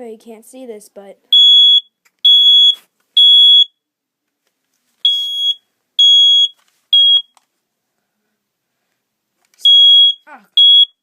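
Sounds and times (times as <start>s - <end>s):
smoke alarm beeping: 1.3s - 3.8s, 5.0s - 7.4s, 9.6s - 11.0s.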